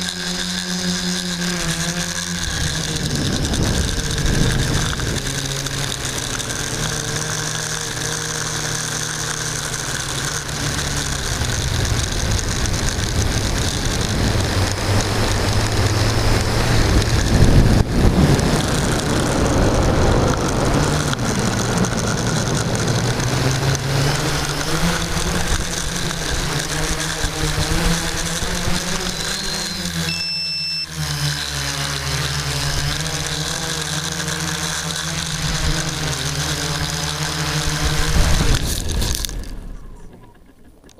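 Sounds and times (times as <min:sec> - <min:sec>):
drone propellers humming: 0:00.0 - 0:40.9
short high beeps: 0:29.2 - 0:31.0.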